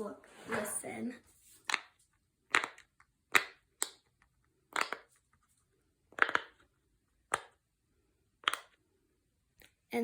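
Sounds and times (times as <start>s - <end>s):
fidget toy bubbles popping: 6.1s - 6.6s.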